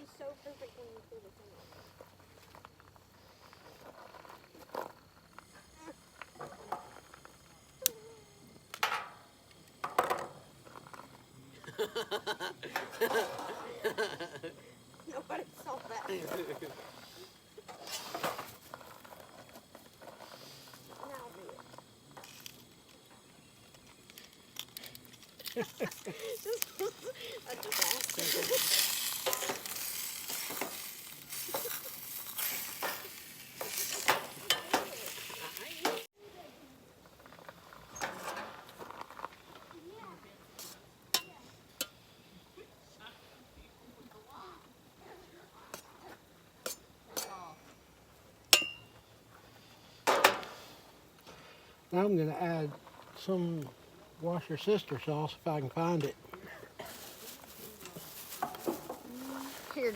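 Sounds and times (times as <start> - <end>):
food sizzling in a frying pan: 15.0 - 36.2, 56.9 - 59.9
person chuckling: 25.4 - 28.7
utensil scraping a pan: 27.7 - 36.1.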